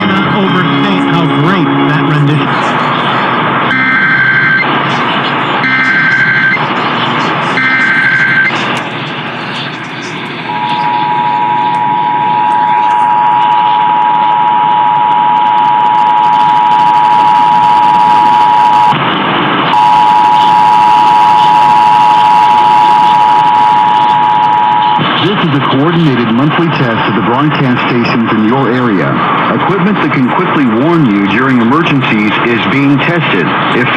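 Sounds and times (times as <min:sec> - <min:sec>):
radio static hiss: 0:00.0 - 0:14.8, 0:15.4 - 0:33.9
steady two-tone attention signal: 0:00.0 - 0:19.0, 0:19.7 - 0:25.1
screeching digital data burst: 0:01.1 - 0:06.7, 0:07.4 - 0:14.7.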